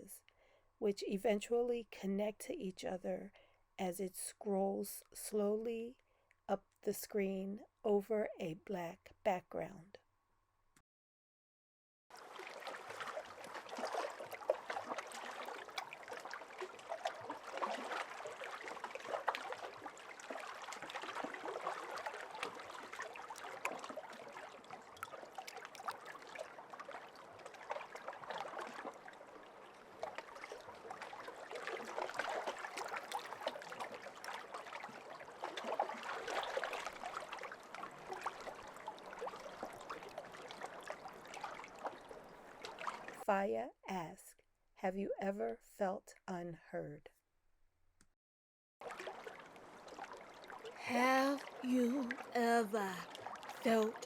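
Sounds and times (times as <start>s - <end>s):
lake waves lapping: 12.1s - 43.2s, 48.8s - 50.8s.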